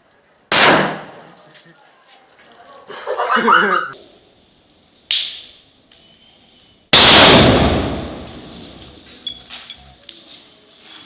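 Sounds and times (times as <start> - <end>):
firecracker loud bang: 0.5 - 1.2, 6.9 - 8.8
sharp crack: 0.5 - 1.4, 5.0 - 5.6, 6.9 - 9.0.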